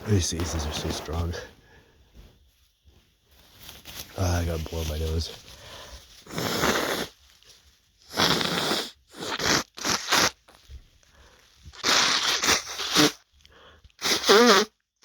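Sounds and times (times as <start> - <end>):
man blowing nose hard: 6.2 - 7.2, 8.1 - 10.6, 11.7 - 13.3, 14.0 - 14.8.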